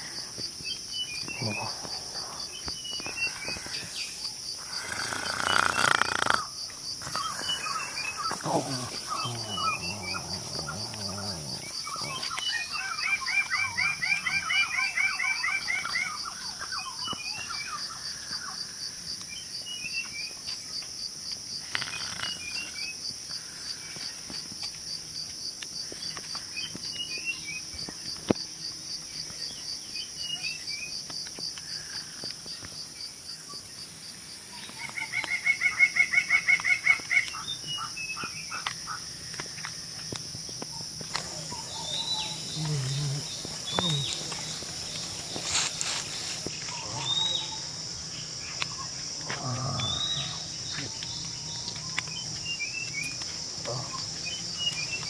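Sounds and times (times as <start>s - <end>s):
insects buzzing: 0.0s - 55.0s
bird chirps: 40.7s - 45.2s.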